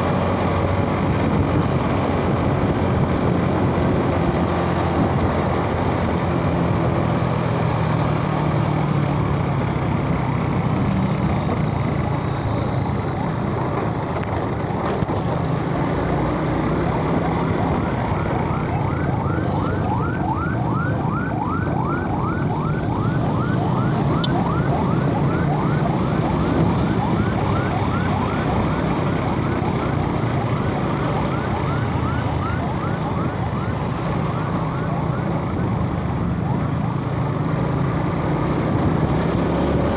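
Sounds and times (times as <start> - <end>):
wind and road noise: 0.0 - 39.9
siren rising sweeps: 15.6 - 37.0.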